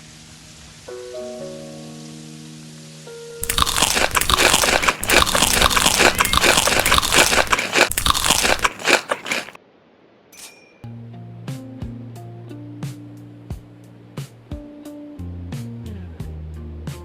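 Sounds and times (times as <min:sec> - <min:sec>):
person chewing crisp food: 0:03.4 - 0:09.6.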